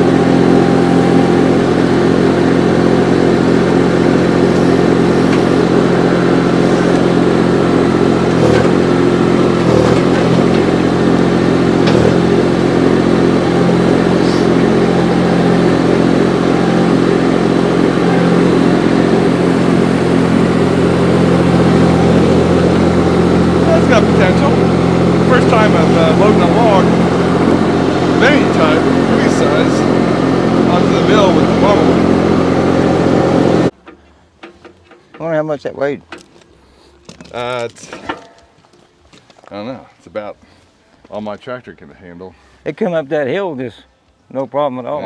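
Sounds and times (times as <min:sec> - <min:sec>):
loader engine running: 0:00.0 - 0:35.2.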